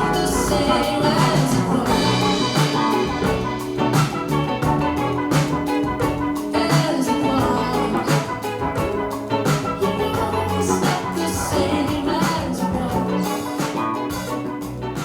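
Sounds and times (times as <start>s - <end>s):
pop music through speakers: 0.0s - 15.0s.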